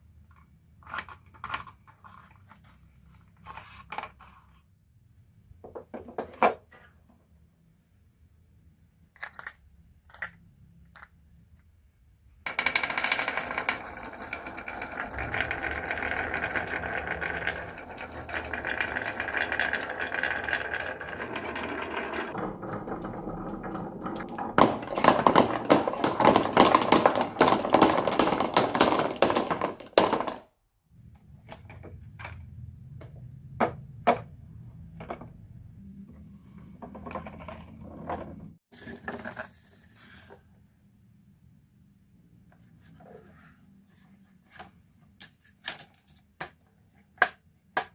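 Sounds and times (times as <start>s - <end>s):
marbles rattling down wooden run: 12.5s - 30.4s.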